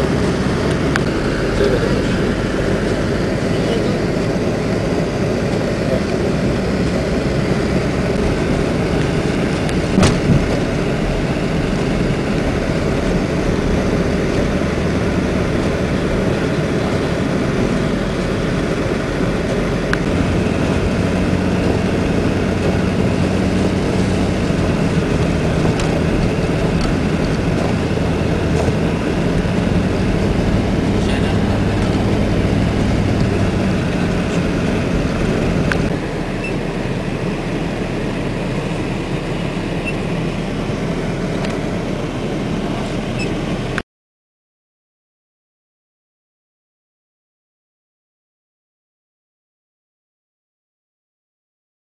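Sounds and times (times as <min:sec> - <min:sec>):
van engine drone: 0:00.0 - 0:43.8
tyre and wind noise: 0:04.2 - 0:36.0
short knock: 0:10.0 - 0:10.7.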